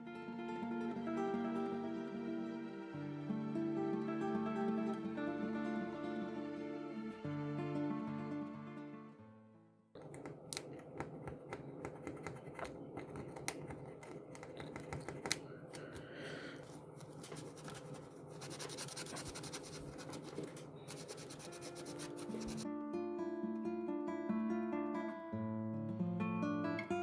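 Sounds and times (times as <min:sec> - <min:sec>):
scraper scratching on metal: 0:17.1 - 0:22.6.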